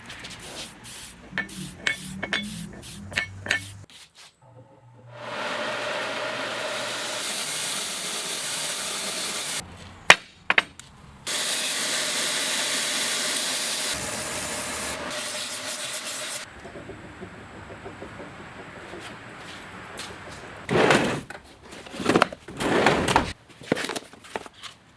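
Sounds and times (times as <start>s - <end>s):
abrasive rubbing: 0.1s - 3.9s.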